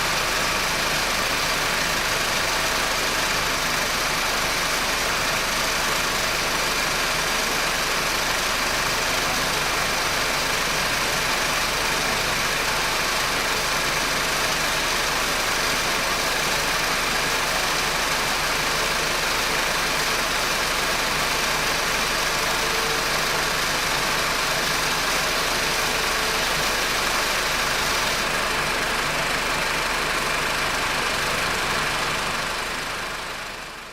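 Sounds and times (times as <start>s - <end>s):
car engine idling: 0.0s - 33.9s.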